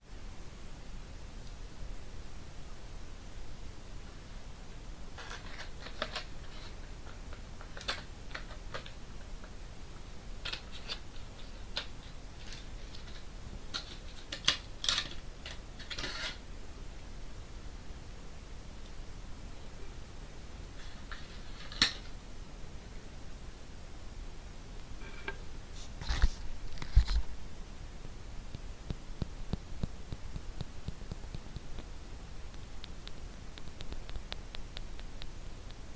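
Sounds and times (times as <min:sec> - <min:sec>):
small crackles and clicks: 0:05.2 - 0:16.3, 0:28.0 - 0:35.9.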